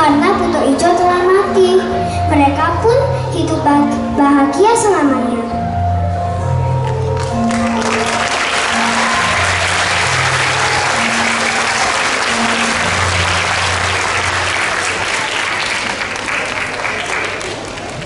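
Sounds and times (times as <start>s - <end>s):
music playing: 0.0s - 18.0s
audience applauding: 6.8s - 18.0s.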